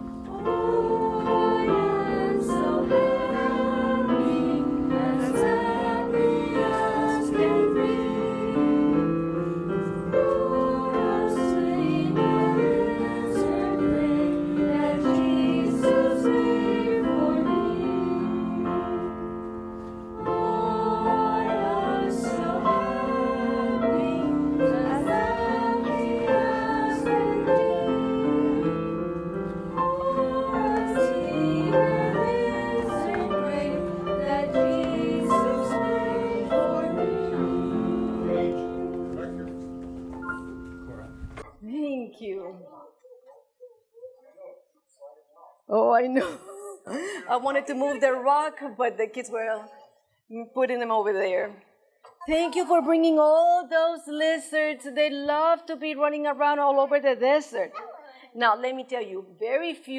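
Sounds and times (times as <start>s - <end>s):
children singing: 0.0s - 9.0s, 10.1s - 19.3s, 20.2s - 39.4s
piano accompaniment: 0.0s - 41.5s.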